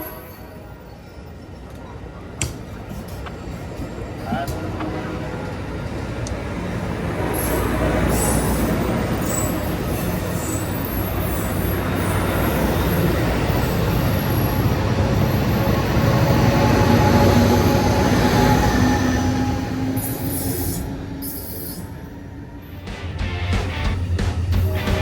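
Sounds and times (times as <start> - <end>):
train rumbling on rails: 0.0 - 25.0
faint high wheel squeals: 7.4 - 14.8, 16.5 - 22.1.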